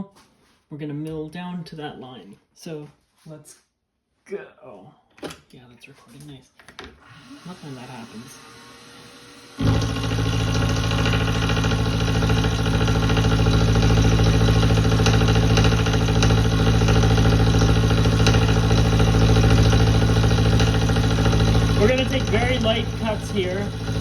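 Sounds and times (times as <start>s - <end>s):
milling machine humming: 7.1s - 24.0s.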